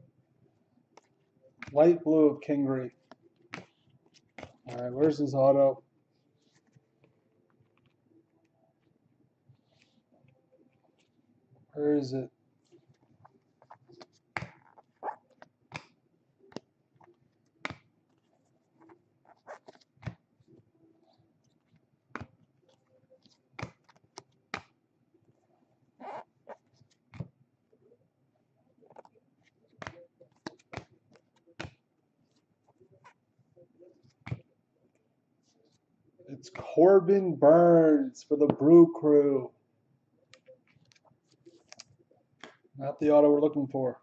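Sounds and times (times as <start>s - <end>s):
cards flicked through by hand: 15.7s - 16.6s, 23.6s - 24.7s, 29.8s - 30.9s.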